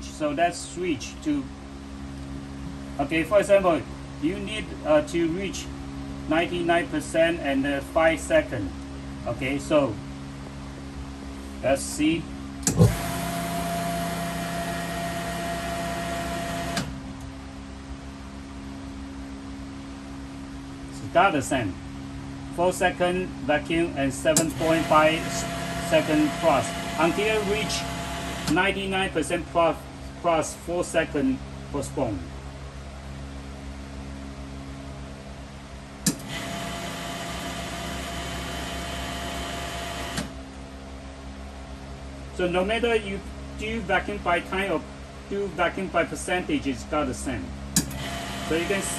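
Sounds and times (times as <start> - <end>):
quiet steady machine hum: 0.0 - 48.9
vacuum pump running: 8.6 - 48.9
machine clicks: 24.4 - 28.6.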